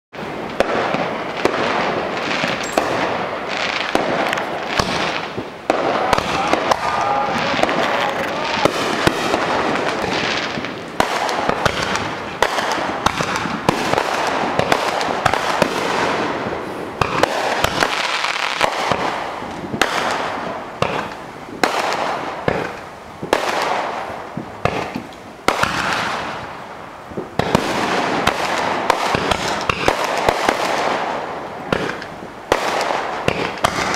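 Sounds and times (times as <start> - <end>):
firework crackling: 0.2 - 33.9
firework shell bangs and pops: 0.5 - 3.2, 17.0 - 24.0, 24.6 - 26.2, 31.7 - 33.9.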